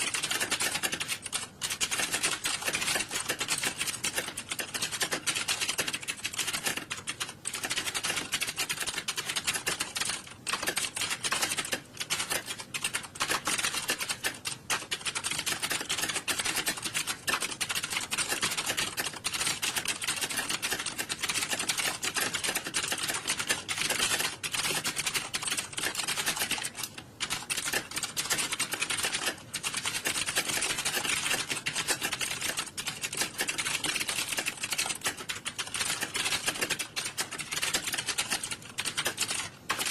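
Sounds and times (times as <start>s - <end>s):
keyboards typing clatter: 0.0s - 39.9s.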